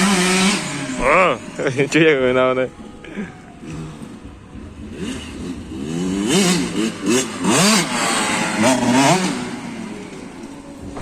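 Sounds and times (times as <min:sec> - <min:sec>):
two-stroke engine revving: 0:00.0 - 0:01.8, 0:04.6 - 0:10.4.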